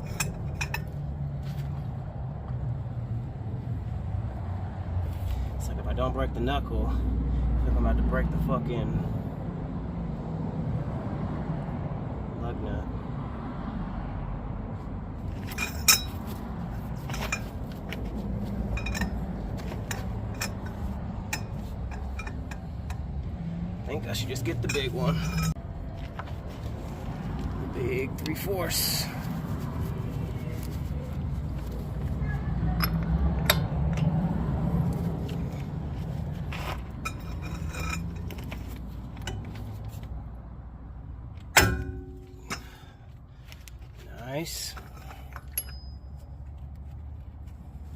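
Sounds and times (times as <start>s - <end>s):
metal hand tools clinking: 0.0s - 0.9s, 15.4s - 16.4s, 17.0s - 23.0s, 24.0s - 25.6s, 36.4s - 39.7s, 41.6s - 43.0s, 44.4s - 46.4s
loud metallic clang: 41.5s - 42.8s.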